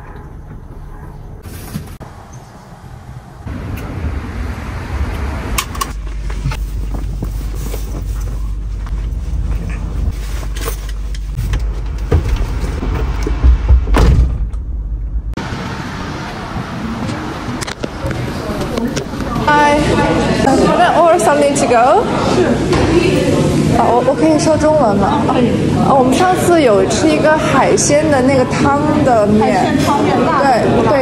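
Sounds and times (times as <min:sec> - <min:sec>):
engine and road rumble: 0:00.0 - 0:20.5
knocks and thumps: 0:11.3 - 0:14.7.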